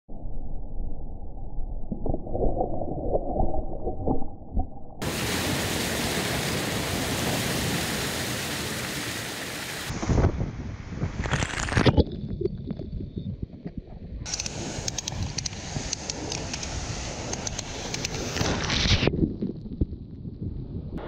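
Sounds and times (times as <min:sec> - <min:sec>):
rushing water: 0:05.0 - 0:10.3, 0:14.3 - 0:18.8.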